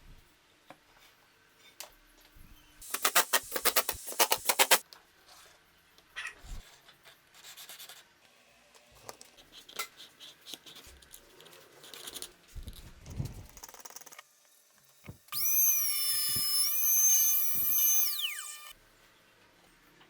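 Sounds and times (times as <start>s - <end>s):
power tool motor whine: 15.3s - 18.8s.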